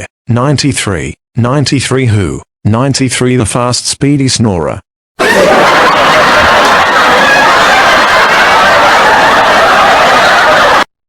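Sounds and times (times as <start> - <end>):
audience laugh track: 5.2 - 10.9.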